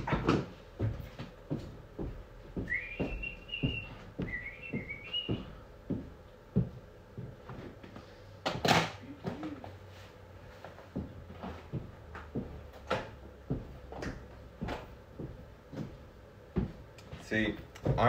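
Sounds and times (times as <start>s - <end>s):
person whistling: 2.6s - 5.6s.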